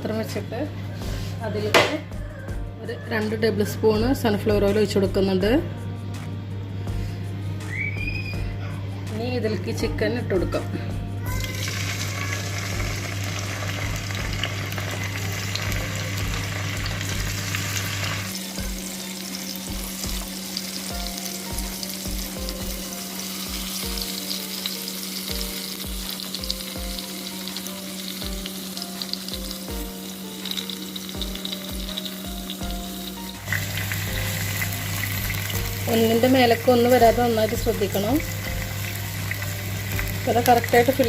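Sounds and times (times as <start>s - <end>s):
chicken sizzling in oil: 11.2s - 41.0s.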